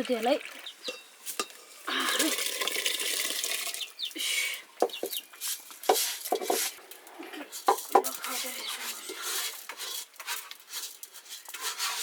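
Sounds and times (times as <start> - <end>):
water pouring and splashing: 0.0 - 4.1
sharp knocks and clatters: 4.8 - 5.2, 5.9 - 6.7.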